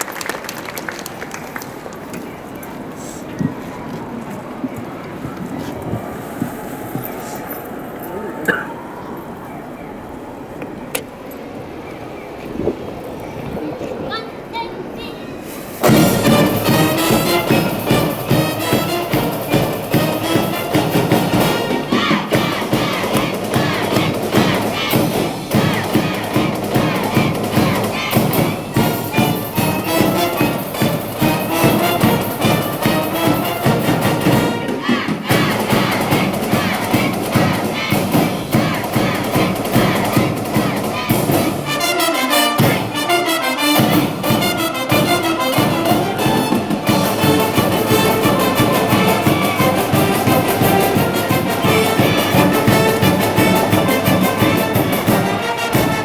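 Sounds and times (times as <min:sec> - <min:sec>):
brass and trumpets: 0:14.6 - 0:56.0
wind band playing: 0:14.6 - 0:56.0
steady drum beat: 0:15.8 - 0:43.1, 0:43.7 - 0:56.0.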